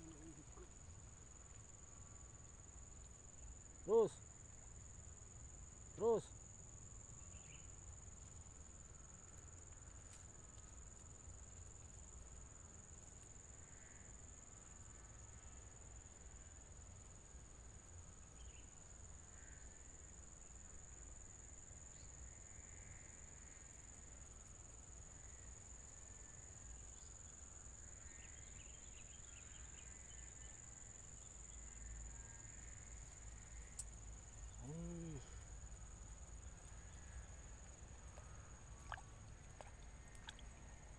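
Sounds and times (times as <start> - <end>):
insects chirring: 0.0 - 40.9.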